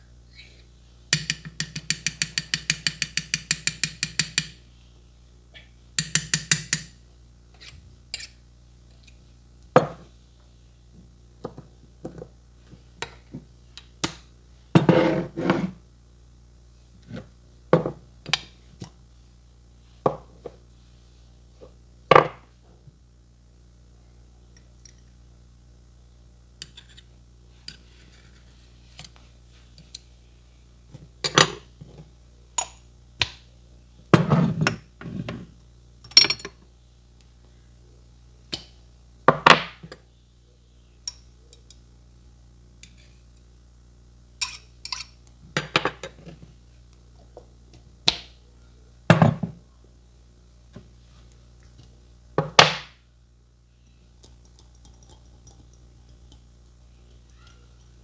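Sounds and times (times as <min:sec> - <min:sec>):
steady low hum: 0:00.0 - 0:58.0
sharp taps and knocks: 0:01.2 - 0:04.6.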